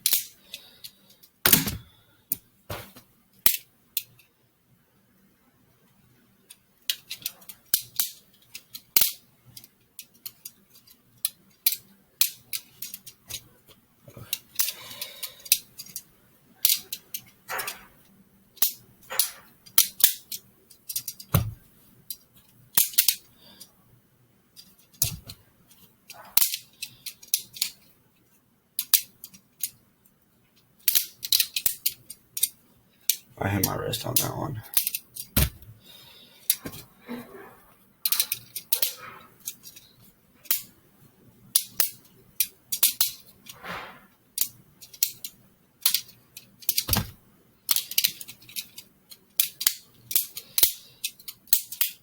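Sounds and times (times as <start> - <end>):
plastic clicks and clacks: 44.4 - 52.0.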